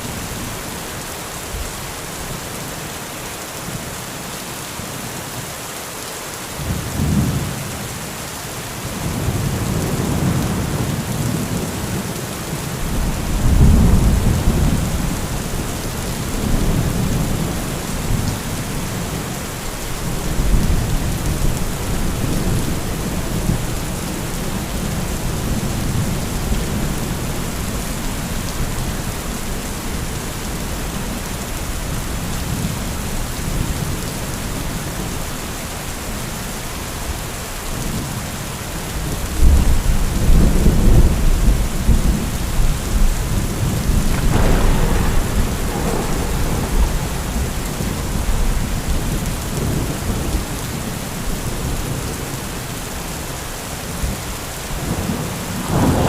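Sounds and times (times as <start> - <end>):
heavy rain falling: 0.0 - 56.0
thunder clap and rumbles: 9.0 - 35.1, 39.0 - 52.4, 54.8 - 56.0.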